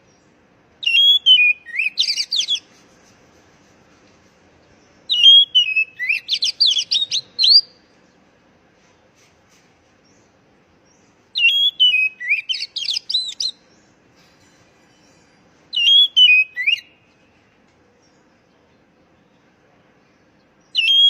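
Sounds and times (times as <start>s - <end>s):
bird singing sliding whistles: 0.8s - 3.2s, 5.1s - 7.7s, 11.4s - 13.6s, 15.7s - 17.0s, 20.7s - 21.0s.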